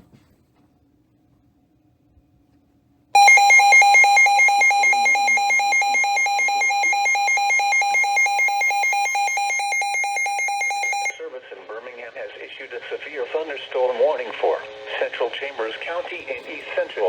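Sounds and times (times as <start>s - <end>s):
two-tone alert signal: 3.2s - 11.2s.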